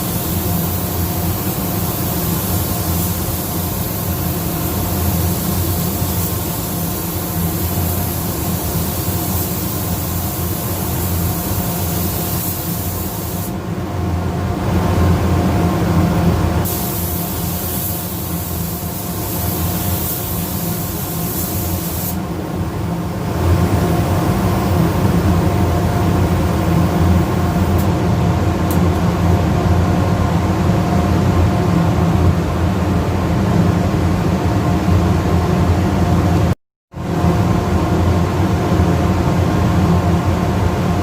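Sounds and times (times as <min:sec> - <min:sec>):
spray gun hissing: 0:00.0 - 0:13.6, 0:16.6 - 0:22.3.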